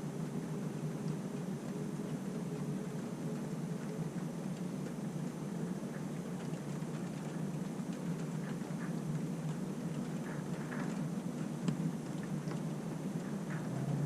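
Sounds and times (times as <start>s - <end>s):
steady rain: 0.0s - 14.0s.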